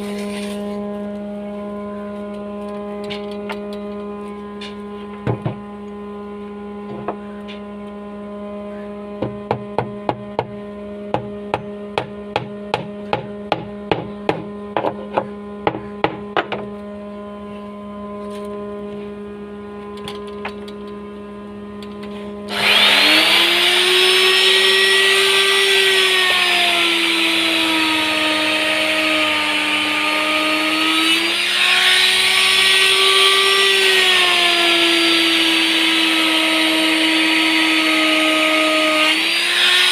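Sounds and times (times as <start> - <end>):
steady low hum: 0.0 - 38.3
electric router cutting wood: 21.8 - 39.9.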